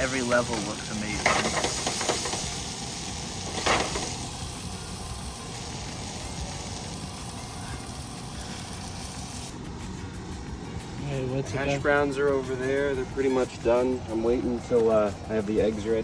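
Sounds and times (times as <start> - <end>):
food sizzling in a skillet: 0.0 - 9.6.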